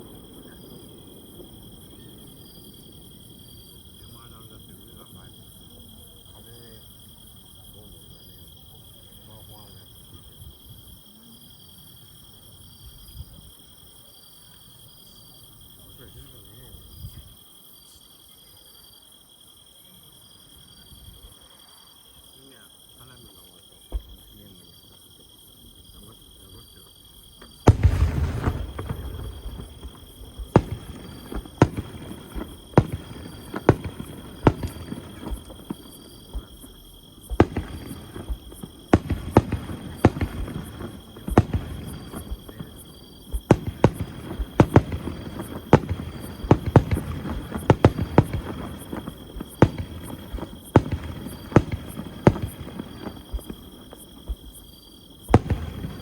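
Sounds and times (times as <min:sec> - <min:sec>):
fireworks bangs and crackle: 0:00.0 - 0:10.9, 0:23.1 - 0:24.6, 0:27.3 - 0:56.0
fireworks deep boom: 0:00.0 - 0:11.0, 0:23.8 - 0:24.6, 0:27.3 - 0:56.0.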